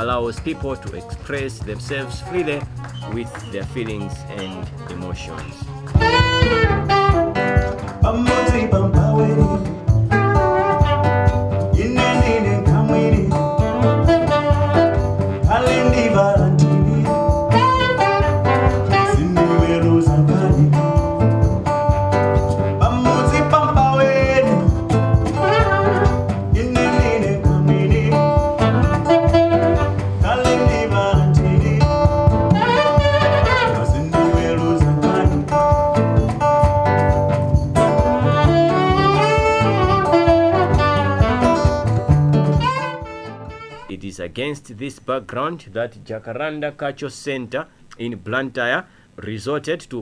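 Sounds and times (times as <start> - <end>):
bass line: 0.0 - 43.7
steady beat: 0.0 - 43.9
acoustic guitar: 0.0 - 45.4
person singing: 7.9 - 11.0, 11.7 - 21.2, 22.6 - 36.5.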